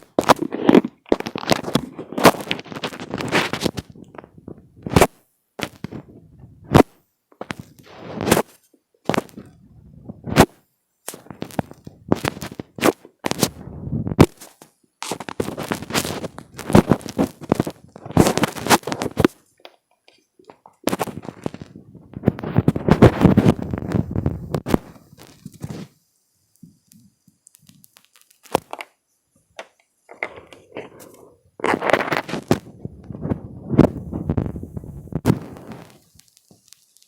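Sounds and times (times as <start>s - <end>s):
hands scratching a microphone: 0.0s - 6.9s, 7.6s - 19.4s, 20.8s - 25.9s, 30.1s - 36.8s.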